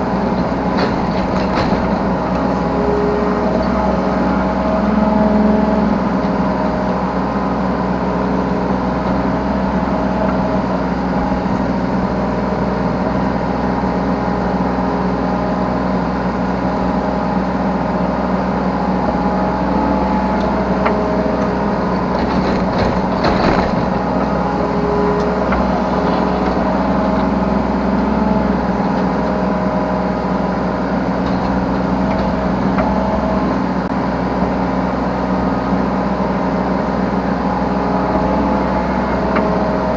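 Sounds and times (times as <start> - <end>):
excavator diesel engine running: 0.0 - 39.9
hydraulic whine: 0.0 - 39.9
noisy clatter: 0.2 - 2.6, 21.4 - 24.4.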